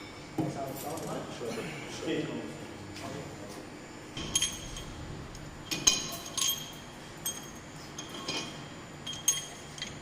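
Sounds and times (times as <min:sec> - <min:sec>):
metal tools clinking: 0:05.7 - 0:10.0.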